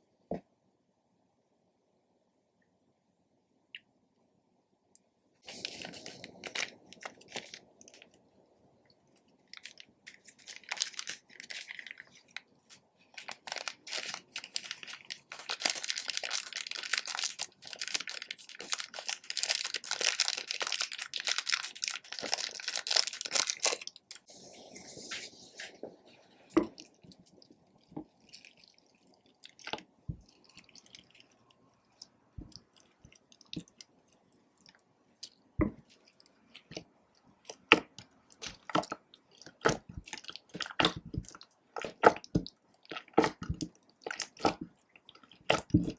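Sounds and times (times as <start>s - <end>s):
sticky crackles and pops: 26.6s - 45.9s.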